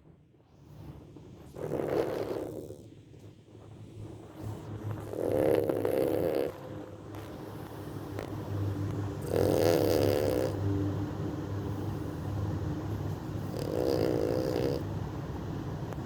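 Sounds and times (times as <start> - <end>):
puppy snoring: 1.4 - 3.2, 4.4 - 10.7, 11.6 - 15.1.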